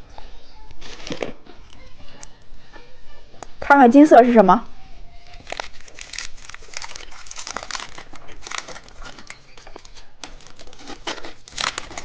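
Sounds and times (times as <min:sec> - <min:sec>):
plastic wrapper crinkling: 0:00.8 - 0:01.8, 0:05.2 - 0:12.0.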